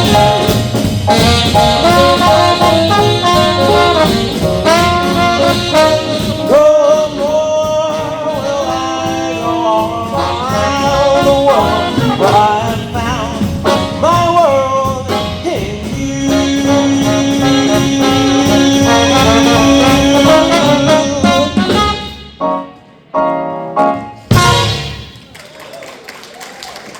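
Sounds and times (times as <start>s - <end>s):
jump blues band with horns: 0.0s - 25.4s.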